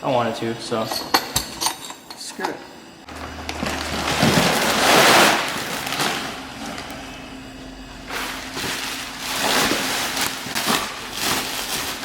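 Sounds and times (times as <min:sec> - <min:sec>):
steady low hum: 0:00.0 - 0:12.0
rustling crackly handling noise: 0:08.0 - 0:12.0.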